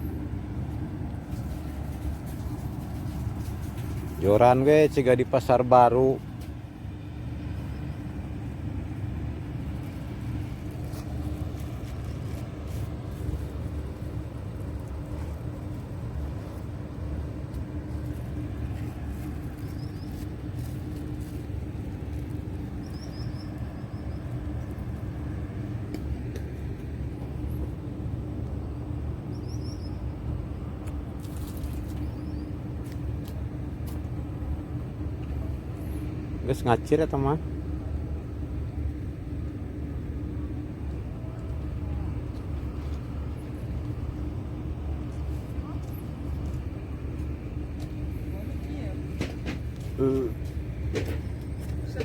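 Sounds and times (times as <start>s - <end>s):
constant hum: 0.0s - 52.0s.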